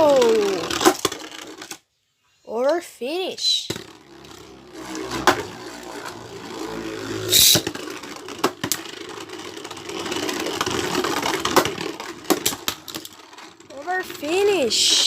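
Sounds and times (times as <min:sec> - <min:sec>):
spinning tops whirring: 0:00.0 - 0:01.8, 0:03.6 - 0:15.0
short rasping burst: 0:03.9 - 0:08.5
tops clacking together: 0:07.4 - 0:14.3.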